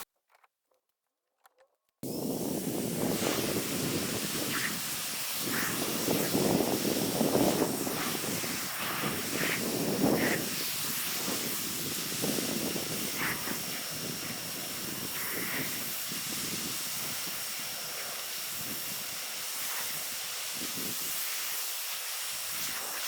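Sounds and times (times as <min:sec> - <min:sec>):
pressure washer spraying: 0:02.0 - 0:23.0.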